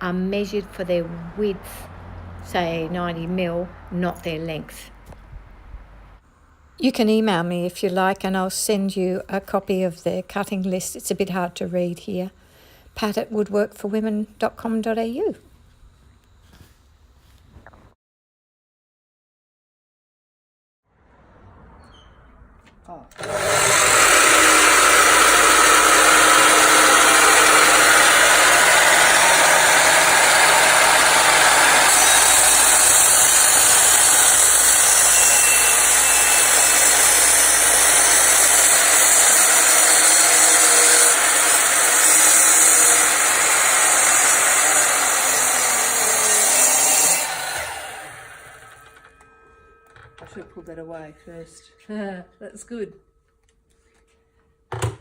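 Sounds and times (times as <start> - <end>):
power saw cutting timber: 23.1 - 49.1.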